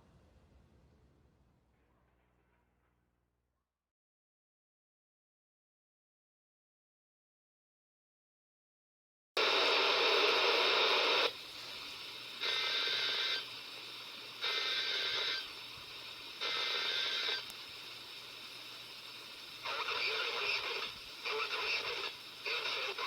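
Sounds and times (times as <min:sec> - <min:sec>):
static hiss: 0:09.4 - 0:23.0.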